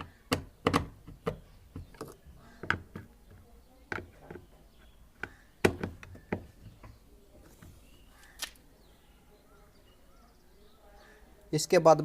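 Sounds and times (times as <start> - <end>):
hard parts knocking and clicking: 0.0 - 7.0.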